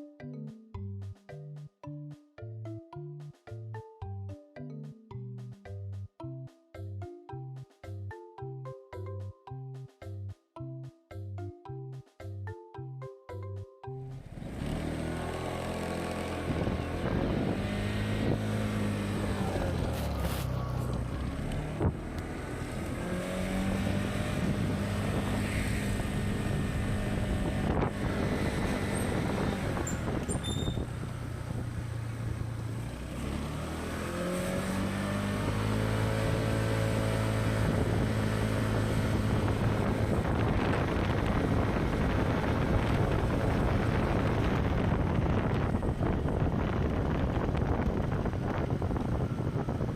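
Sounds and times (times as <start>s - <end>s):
scooter engine running: 14.0s - 49.9s
wind noise on microphone: 16.2s - 32.9s, 34.6s - 49.9s.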